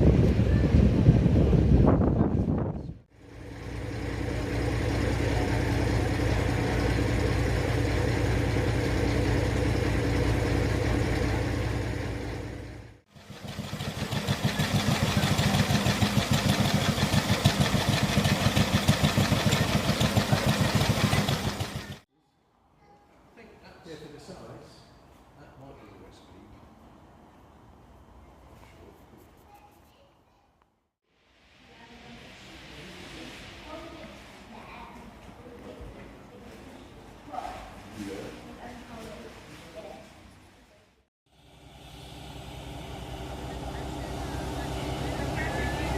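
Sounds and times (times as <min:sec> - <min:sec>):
diesel locomotive engine idling: 0:03.1 - 0:22.0, 0:41.3 - 0:45.9
diesel engine quick even beat: 0:03.2 - 0:22.0, 0:41.3 - 0:45.9.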